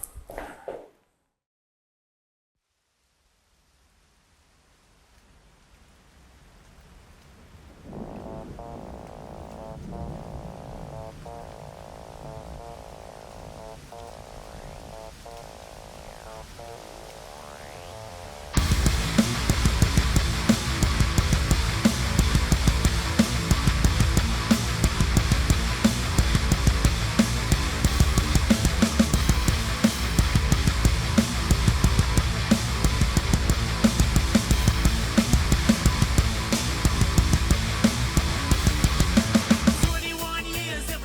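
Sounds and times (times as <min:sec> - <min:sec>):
fast dense drumming: 0:18.6 - 0:41.0
heavy rock band playing: 0:18.6 - 0:41.0.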